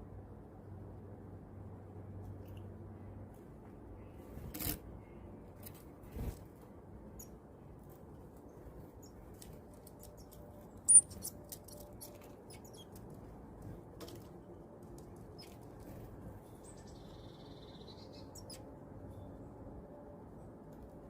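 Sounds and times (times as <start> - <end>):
bird chirp: 10.0 - 13.0, 16.5 - 19.4.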